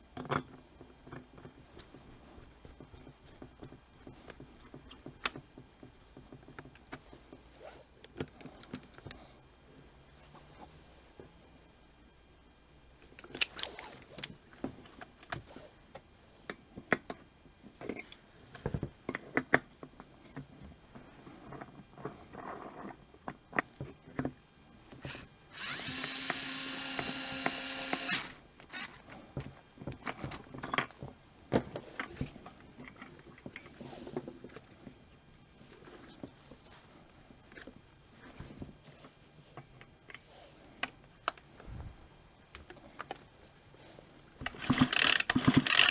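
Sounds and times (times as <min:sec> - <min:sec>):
parts and tools clicking: 0:13.0 - 0:15.5, 0:24.9 - 0:31.0, 0:44.4 - 0:45.9
small electric power tool running: 0:25.1 - 0:29.0, 0:44.9 - 0:45.9.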